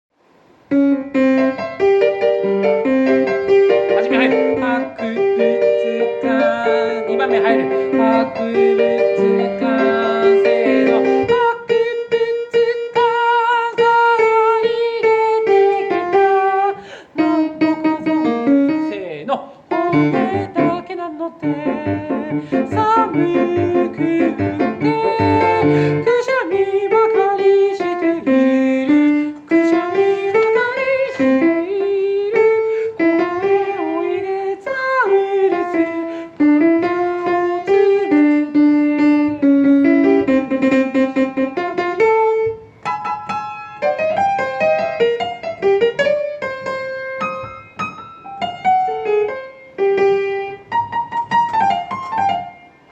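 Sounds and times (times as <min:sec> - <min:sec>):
piano accompaniment: 0:00.1 - 0:52.9
person singing: 0:03.0 - 0:42.1.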